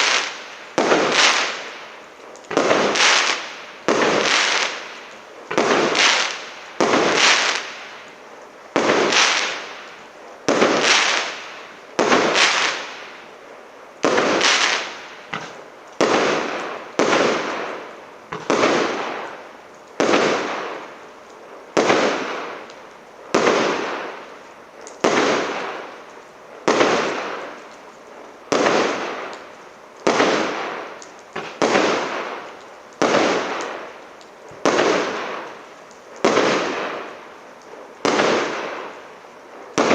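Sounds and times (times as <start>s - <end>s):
firework battery shots banging: 14.0s - 17.7s, 18.3s - 19.3s.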